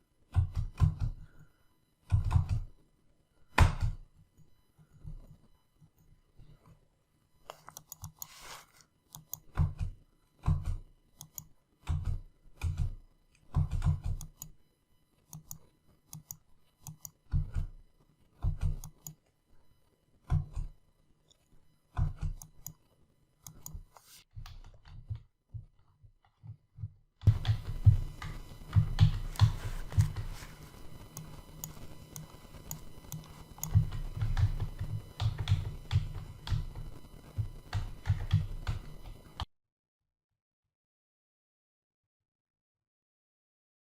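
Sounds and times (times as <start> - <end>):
keyboard typing: 7.4 - 14.6, 15.3 - 17.8, 20.2 - 39.5.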